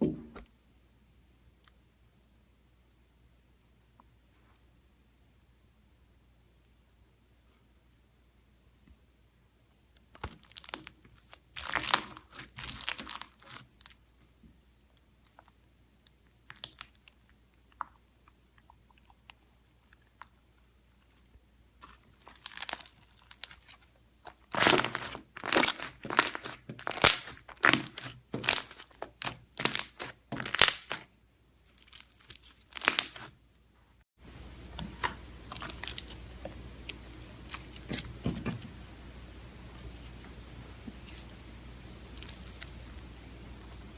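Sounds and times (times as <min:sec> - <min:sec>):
slime squeezed crackling: 0:10.1 - 0:14.0, 0:21.8 - 0:31.1, 0:31.7 - 0:33.3, 0:34.8 - 0:38.1, 0:42.0 - 0:42.8
steady background hiss: 0:34.2 - 0:43.9.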